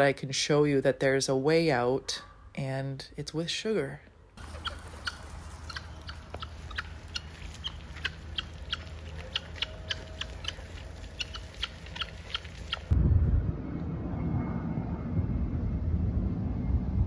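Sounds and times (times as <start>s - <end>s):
birds calling: 4.4s - 12.9s
low rumble: 4.4s - 17.0s.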